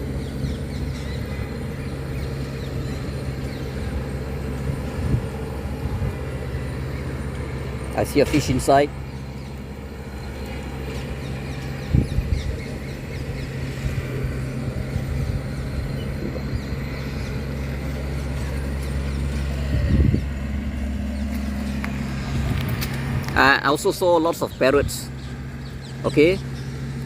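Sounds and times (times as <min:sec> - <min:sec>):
low hum of road traffic: 0:00.0 - 0:27.0.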